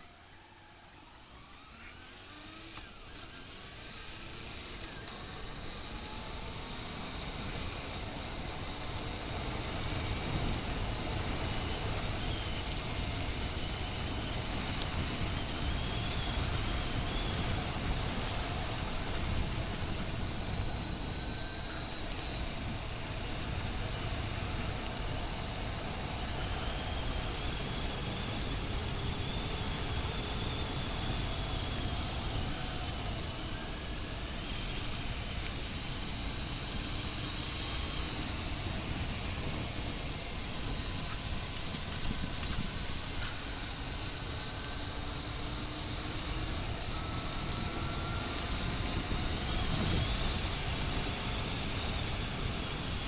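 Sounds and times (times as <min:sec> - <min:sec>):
wind rush over microphone: 0:46.7 - 0:53.0.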